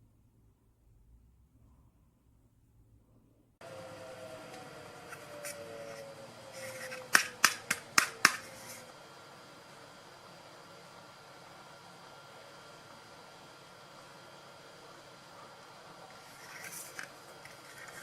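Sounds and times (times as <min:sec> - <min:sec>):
steady hiss: 0:03.6 - 0:18.0.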